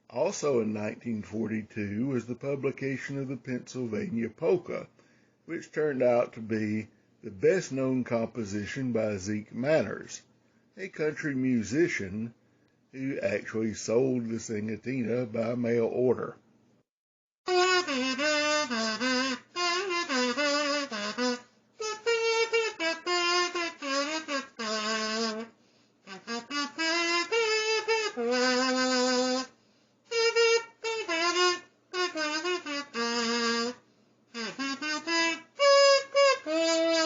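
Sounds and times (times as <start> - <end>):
kazoo buzzing a melody: 17.5 - 37.0.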